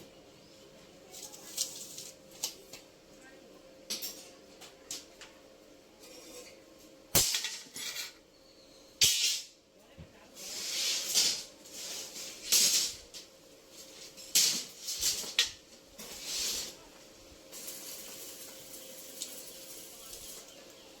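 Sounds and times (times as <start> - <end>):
faint steady hiss: 8.6 - 21.0
hissing spray bursts: 16.0 - 16.8.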